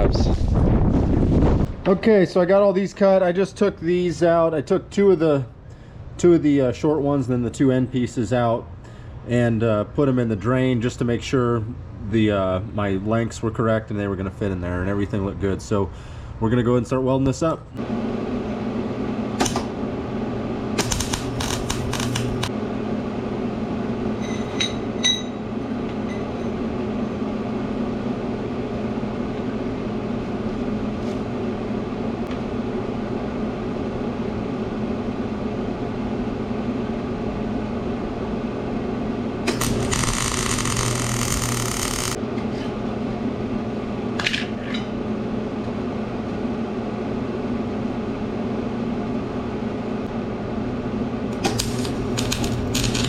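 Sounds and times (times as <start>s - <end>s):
welding equipment humming: 17.9s - 22.6s, 39.3s - 42.3s, 51.3s - 53.0s
arc weld crackling and hissing: 20.8s - 22.5s, 39.5s - 42.2s, 51.4s - 53.0s.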